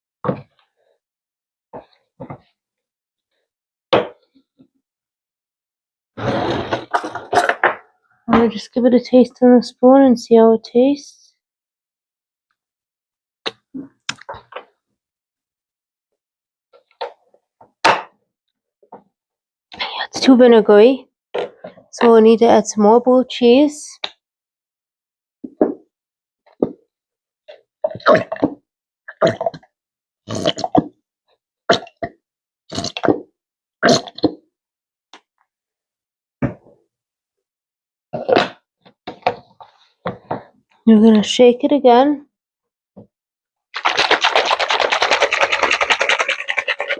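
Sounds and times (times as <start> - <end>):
lip smacks and mouth clicks: 43.8 - 46.9.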